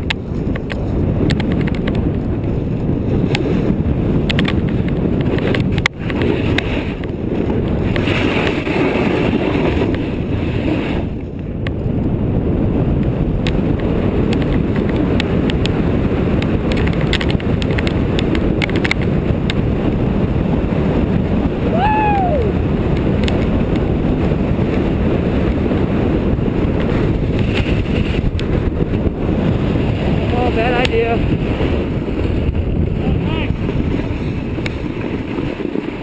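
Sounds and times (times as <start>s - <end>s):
scattered clicks: 0.0s - 2.1s, 4.2s - 7.1s, 13.4s - 15.8s, 16.4s - 19.6s, 22.9s - 23.9s, 30.5s - 31.2s
wind buffeting microphone: 0.0s - 36.0s.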